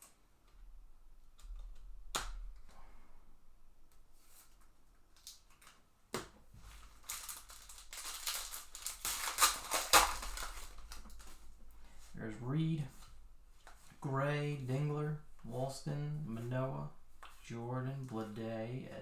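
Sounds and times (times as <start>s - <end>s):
foil wrapper crackling: 6.6s - 12.1s.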